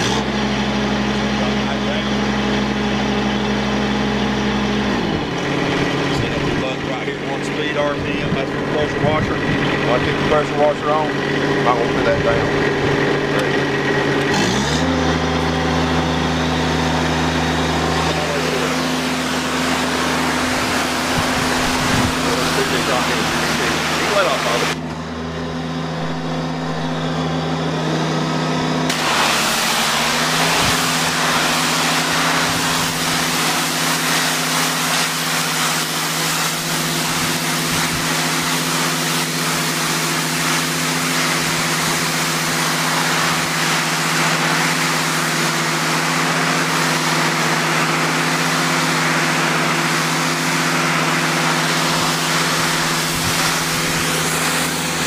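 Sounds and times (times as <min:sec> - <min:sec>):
diesel engine running: 0:00.0 - 0:55.0
loud steady hiss: 0:28.9 - 0:50.8.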